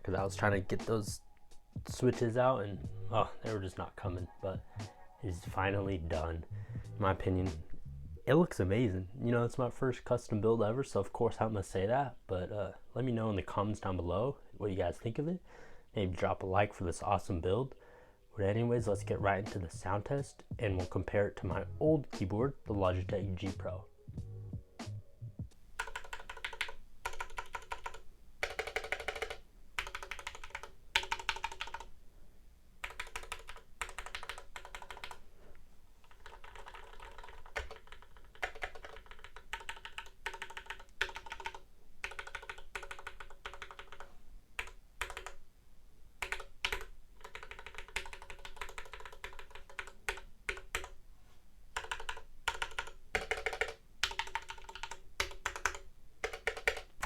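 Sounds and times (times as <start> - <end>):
mechanical keyboard typing: 25.8 - 31.9, 32.8 - 35.2, 36.0 - 45.4, 46.2 - 51.0, 51.8 - 57.0.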